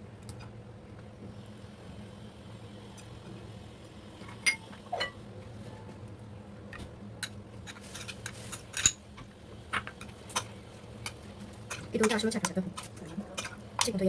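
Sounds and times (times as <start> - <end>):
utensils clinking against a dish: 7.2 - 9.0, 11.1 - 14.0.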